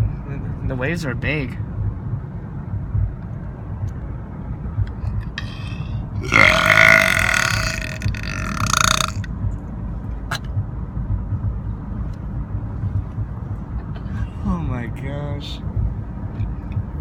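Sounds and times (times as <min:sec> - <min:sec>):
steady low rumble: 0:00.0 - 0:17.0
person burping: 0:05.4 - 0:09.3.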